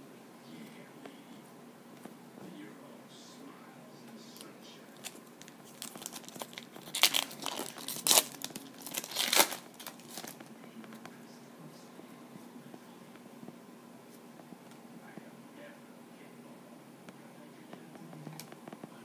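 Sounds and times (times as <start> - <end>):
foil wrapper tearing: 5.0 - 10.4.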